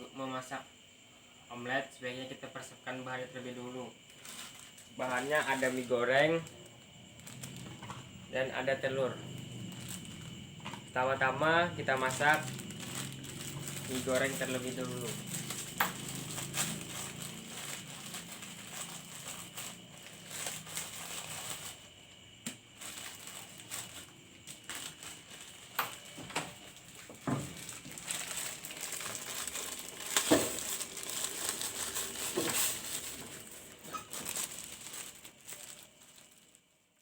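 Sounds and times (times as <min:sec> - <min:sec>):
plastic packet crinkling: 0:04.1 - 0:07.7, 0:09.3 - 0:10.4, 0:11.8 - 0:22.1, 0:22.8 - 0:36.7.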